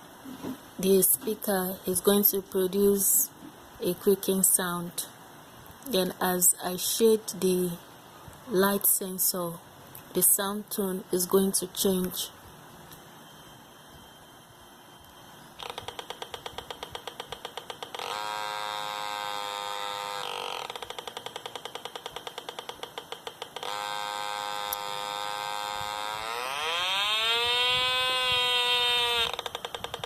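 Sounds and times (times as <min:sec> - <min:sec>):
steady electronic buzz: 0:14.4 - 0:29.8
electronic clicking creak: 0:15.0 - 0:30.0.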